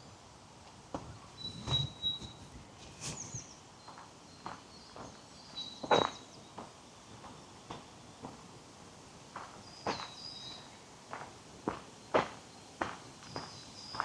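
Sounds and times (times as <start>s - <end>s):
bird chirps: 1.1s - 2.4s.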